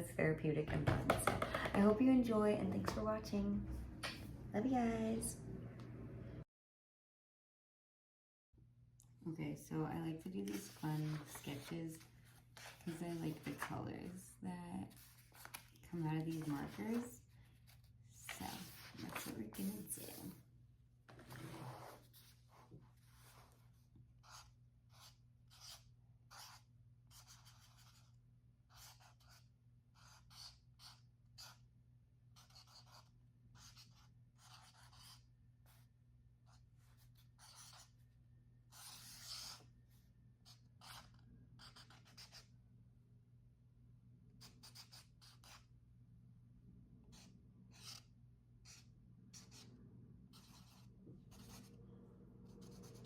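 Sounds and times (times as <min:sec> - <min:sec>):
low steady hum: 0:01.8 - 0:06.4
markers scratching on paper: 0:18.3 - 0:20.4, 0:24.2 - 0:28.1, 0:28.7 - 0:31.6, 0:32.4 - 0:35.3, 0:36.5 - 0:38.0, 0:38.7 - 0:39.7, 0:40.5 - 0:42.5, 0:44.4 - 0:45.7, 0:47.1 - 0:49.7, 0:50.3 - 0:51.8, 0:52.5 - 0:53.0.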